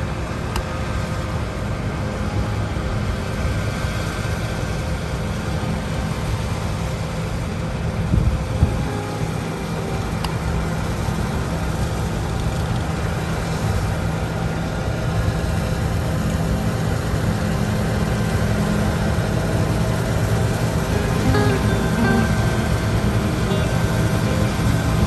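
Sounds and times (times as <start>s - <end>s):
large engine humming: 16.9s - 25.0s.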